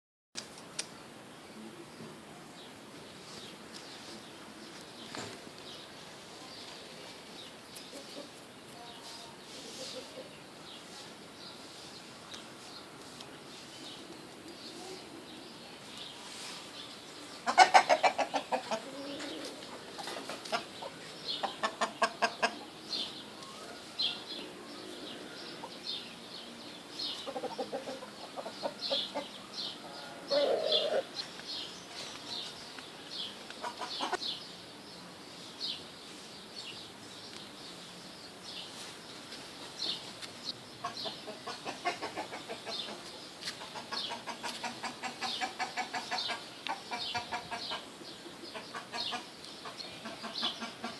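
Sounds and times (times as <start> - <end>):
small birds chirping: 0.8 - 50.9
chickens clucking: 9.5 - 10.4, 17.2 - 25.8, 27.0 - 31.2, 33.4 - 34.3, 40.8 - 50.9.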